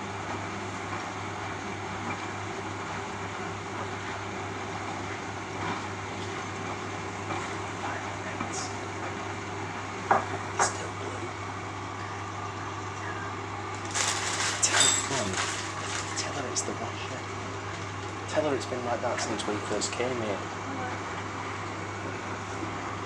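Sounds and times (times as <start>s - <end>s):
washing machine hum: 0.0s - 23.0s.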